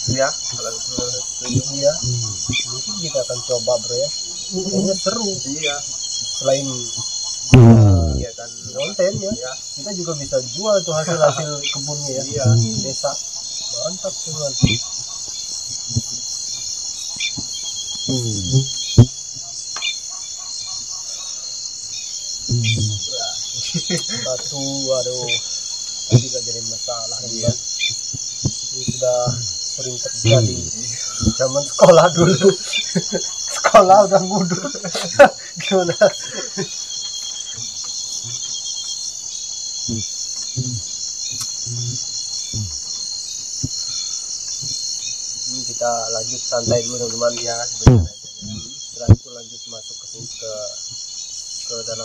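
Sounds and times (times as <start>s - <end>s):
crickets chirping: 0.0s - 52.0s
insect chorus trilling: 0.0s - 52.0s
short low sounds: 7.5s - 8.3s.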